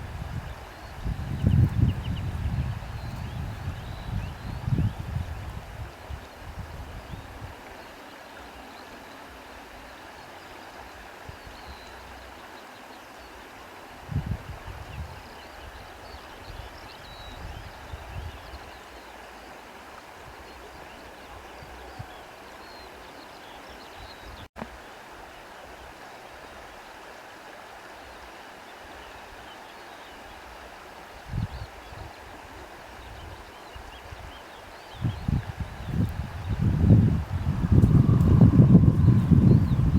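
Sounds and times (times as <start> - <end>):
wind buffeting microphone: 0.0 - 7.6, 14.0 - 18.7, 34.9 - 39.9
wind rustling grass: 0.0 - 23.3, 30.2 - 39.9.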